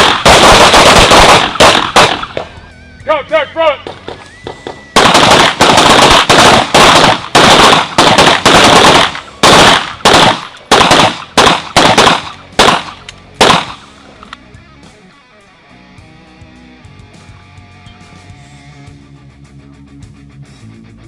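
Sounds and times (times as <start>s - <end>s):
gunshots: 0.0s - 2.6s, 3.6s - 14.0s
faint guitar music: 12.4s - 21.0s.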